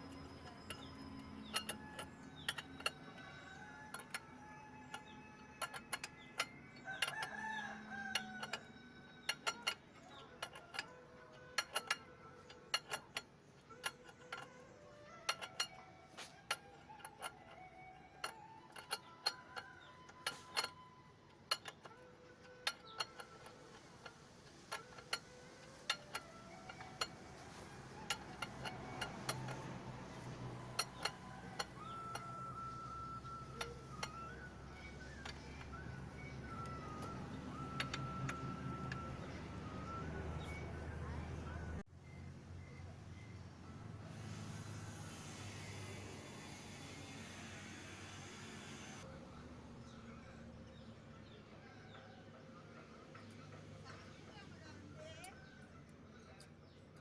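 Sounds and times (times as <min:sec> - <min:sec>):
metal tools clinking: 0:00.0 - 0:40.9.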